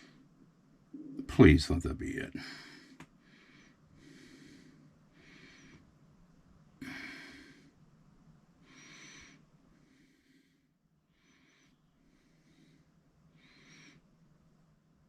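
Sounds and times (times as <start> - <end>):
person breathing close to microphone: 2.4 - 5.9, 6.8 - 7.8.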